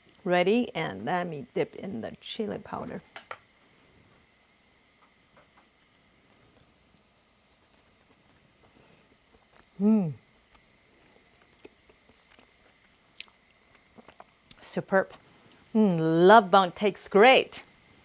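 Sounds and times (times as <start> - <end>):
insects chirring: 0.0 - 18.0
woman humming mmm: 9.8 - 10.2.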